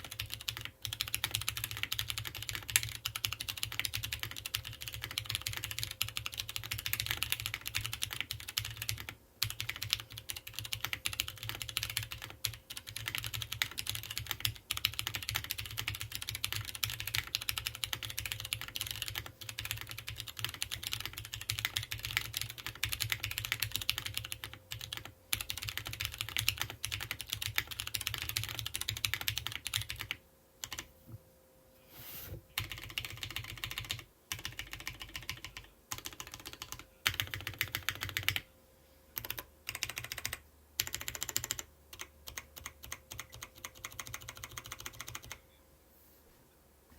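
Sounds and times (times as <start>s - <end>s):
fast typing on mechanical keyboard: 0.0s - 30.9s, 32.6s - 38.4s, 39.2s - 45.4s.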